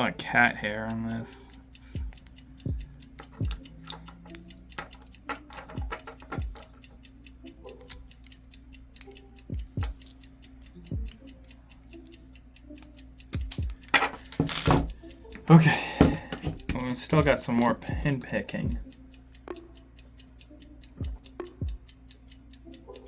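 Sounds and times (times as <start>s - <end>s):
lock pick clicking in lock: 3.2s - 6.8s, 7.6s - 8.4s, 12.8s - 16.8s.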